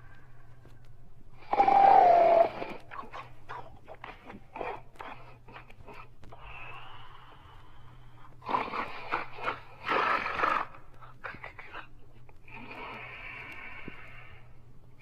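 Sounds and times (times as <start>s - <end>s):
dog snoring: 8.4s - 11.0s.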